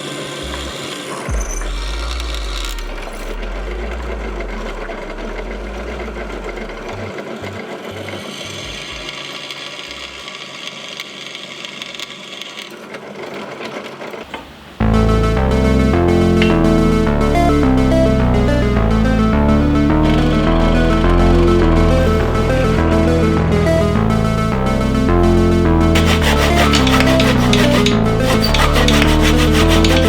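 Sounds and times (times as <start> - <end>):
electric power tool motor running: 25.9 - 30.0.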